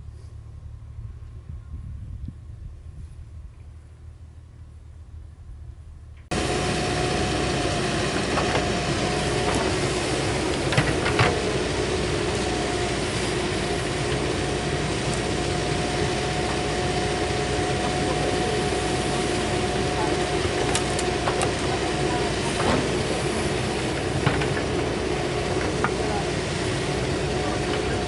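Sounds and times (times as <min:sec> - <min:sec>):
faint low rumble: 0:00.0 - 0:06.3
diesel engine running: 0:00.0 - 0:28.0.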